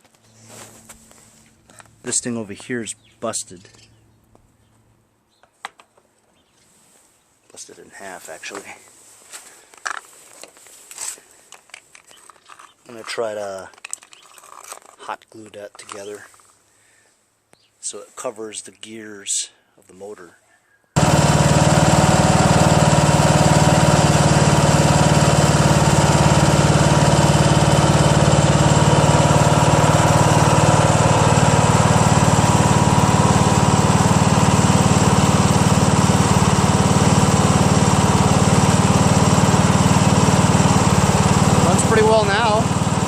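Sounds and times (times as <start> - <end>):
lawn tractor engine running: 21.0 - 43.0.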